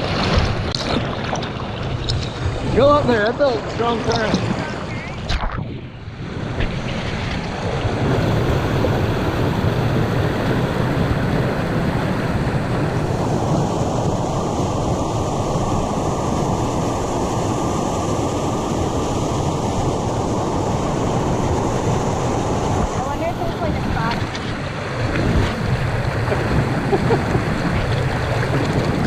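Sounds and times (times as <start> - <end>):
waterfall rushing: 7.7 - 29.0.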